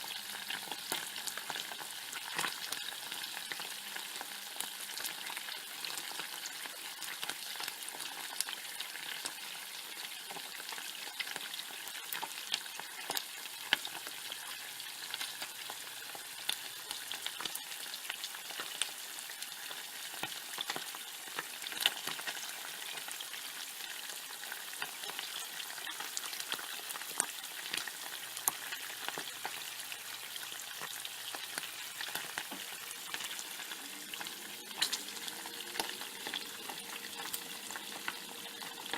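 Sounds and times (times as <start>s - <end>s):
bacon sizzling in a pan: 0.0s - 38.9s
fat crackling and popping: 24.8s - 38.9s.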